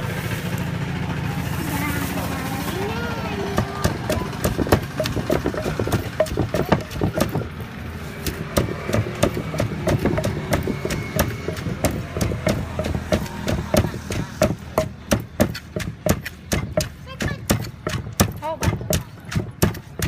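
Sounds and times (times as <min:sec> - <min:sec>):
low engine hum: 0:00.0 - 0:20.0
sharp knocks: 0:03.6 - 0:07.6, 0:08.2 - 0:20.0.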